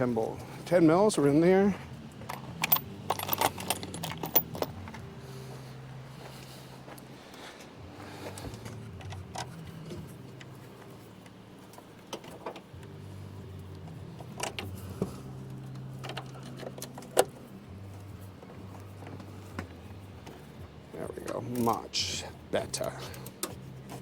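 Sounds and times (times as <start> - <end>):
steady low hum: 0.0 - 24.0
metallic clicks of tools and bolts: 2.2 - 5.0.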